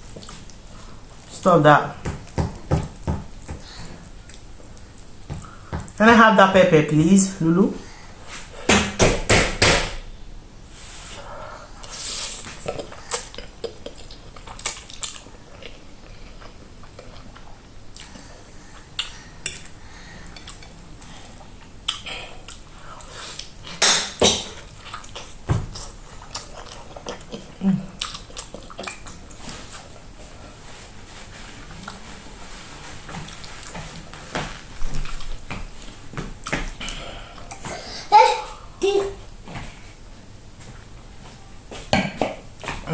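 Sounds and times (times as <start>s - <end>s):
mouth-close chewing: 12.6s - 18.2s, 24.7s - 29.8s.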